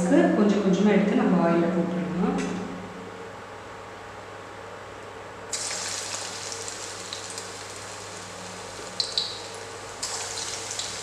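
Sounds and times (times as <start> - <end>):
batter sizzling in hot oil: 5.5 - 11.0
oil popping: 5.5 - 11.0.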